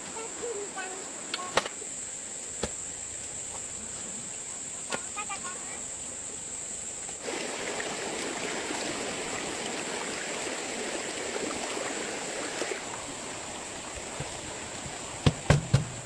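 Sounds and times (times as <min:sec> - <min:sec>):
water running: 0:07.0 - 0:16.0.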